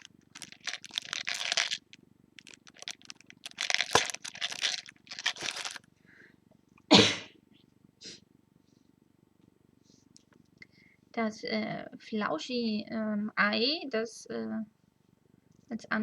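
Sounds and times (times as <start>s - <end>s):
plastic packaging crinkling: 0.0s - 5.9s.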